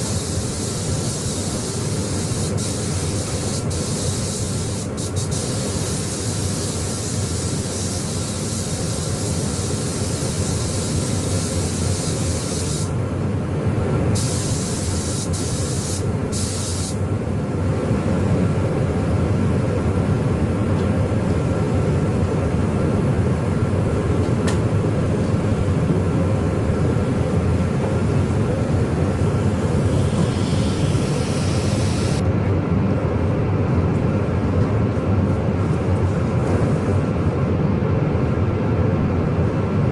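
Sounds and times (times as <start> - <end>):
paint spray gun hissing: 0.0 - 13.0, 14.2 - 17.0, 29.6 - 32.2
low machine drone: 17.0 - 39.9.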